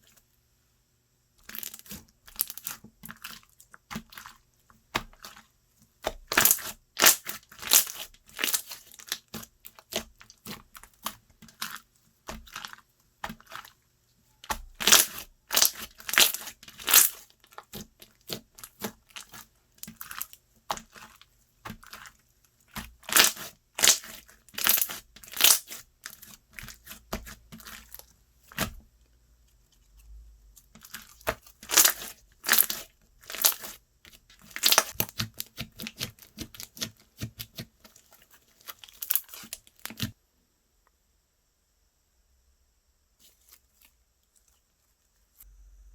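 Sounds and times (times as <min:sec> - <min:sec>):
slime crackling and popping: 0:01.4 - 0:04.4, 0:06.0 - 0:13.7, 0:14.4 - 0:28.8, 0:30.8 - 0:40.2.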